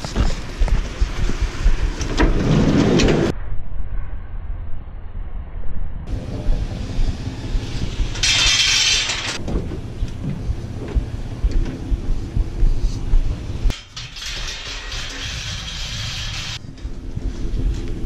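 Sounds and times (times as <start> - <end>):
vehicle engine rumbling: 0.0 - 3.5, 4.1 - 18.0
clinks and rattles: 7.7 - 10.4, 13.7 - 18.0.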